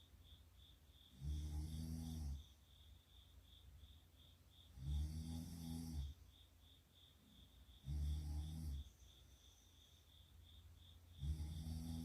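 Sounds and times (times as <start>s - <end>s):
girl snoring: 1.2s - 2.5s, 4.8s - 6.2s, 7.8s - 8.9s, 11.2s - 12.0s.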